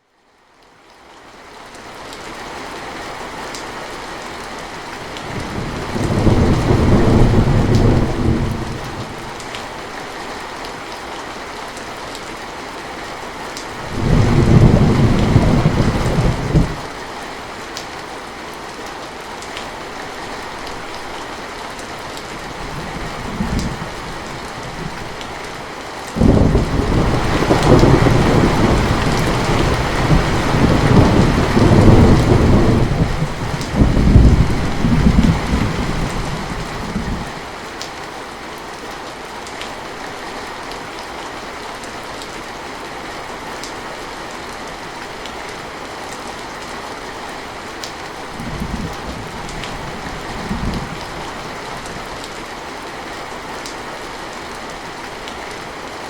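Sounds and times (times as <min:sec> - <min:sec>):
steady rain: 0:00.0 - 0:56.0
thunder rumbling: 0:05.3 - 0:09.4, 0:13.8 - 0:16.9, 0:22.5 - 0:25.5, 0:26.2 - 0:37.4.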